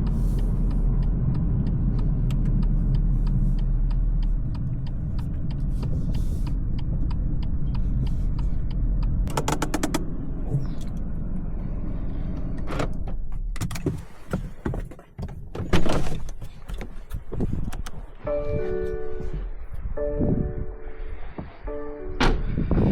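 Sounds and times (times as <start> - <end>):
car engine running: 0.0 - 15.4
clunks and knocks: 9.2 - 10.9, 12.4 - 18.2, 21.3 - 22.9.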